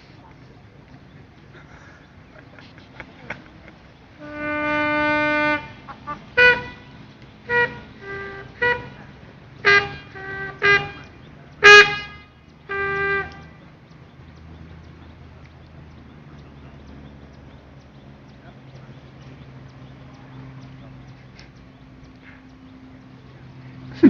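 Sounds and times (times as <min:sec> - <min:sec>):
bugle call: 0:04.2 - 0:13.8.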